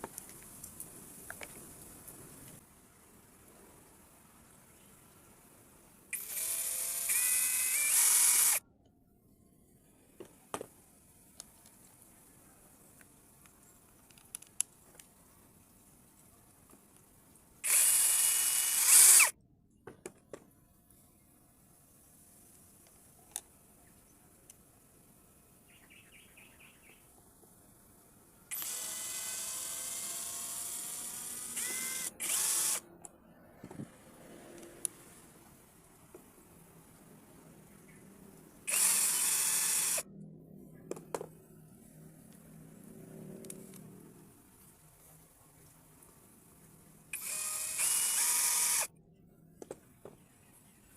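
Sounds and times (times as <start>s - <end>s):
drill clicks and ticks: 6.1s - 8.6s, 16.2s - 19.4s, 28.5s - 33.2s, 38.7s - 40.1s, 47.1s - 48.9s
small electric motor whirring: 6.1s - 8.6s, 17.6s - 19.4s, 28.5s - 32.8s, 38.6s - 40.1s, 47.1s - 48.9s.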